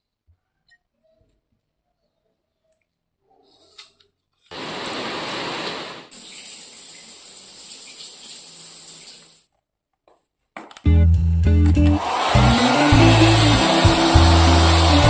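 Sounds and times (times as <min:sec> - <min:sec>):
running water rushing: 0:11.9 - 0:15.0.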